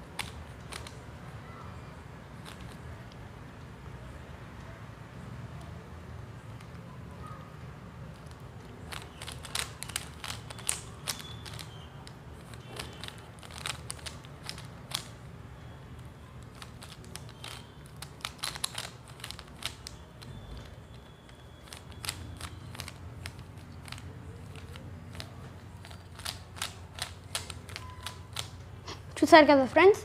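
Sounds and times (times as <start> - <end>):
puzzle cube clicking: 0.0 - 1.0, 2.4 - 3.2, 8.1 - 15.2, 16.0 - 28.6.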